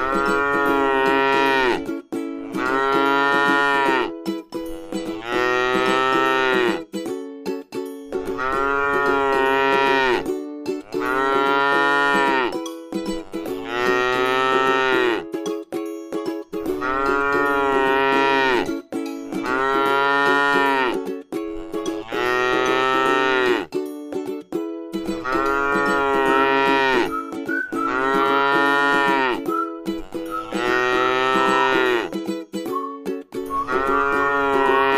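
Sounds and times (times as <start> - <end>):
cow mooing: 0.0 - 1.8, 2.5 - 4.1, 4.8 - 6.8, 8.4 - 10.2, 10.9 - 12.6, 13.6 - 15.2, 16.8 - 18.7, 19.4 - 21.0, 21.6 - 23.7, 25.2 - 27.2, 27.8 - 29.4, 30.0 - 32.1, 33.6 - 34.9.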